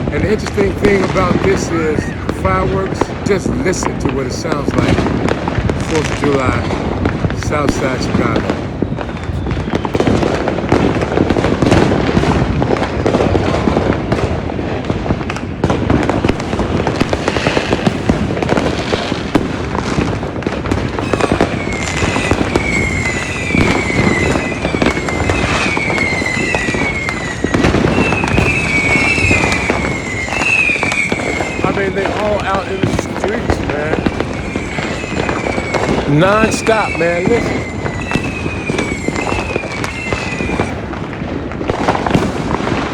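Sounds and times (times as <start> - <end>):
firecrackers popping and banging: 0.0 - 42.9
high falling whistle: 21.0 - 32.5, 33.9 - 40.8.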